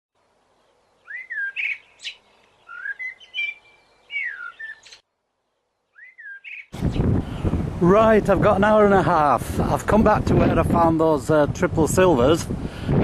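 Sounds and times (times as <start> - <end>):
songbird singing: 0.2 - 7.6.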